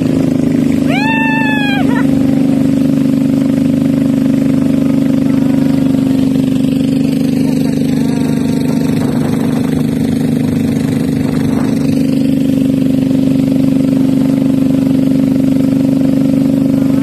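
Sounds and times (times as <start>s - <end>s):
boat engine running steadily: 0.0s - 17.0s.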